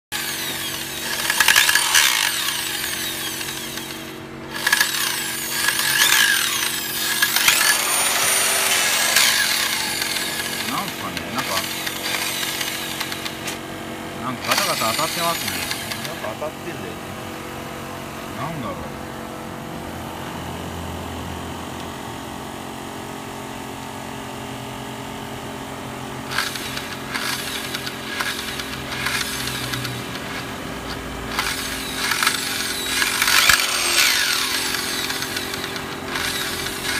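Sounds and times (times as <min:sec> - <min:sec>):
circular saw motor running: 0:00.0 - 0:21.8, 0:26.2 - 0:36.9
rough scraping bursts: 0:00.1 - 0:16.9, 0:26.3 - 0:36.9.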